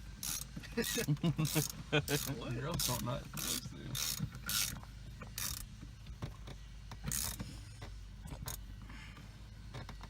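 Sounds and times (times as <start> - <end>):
ratchet wrench clicking: 0.2 - 5.7, 7.0 - 7.4.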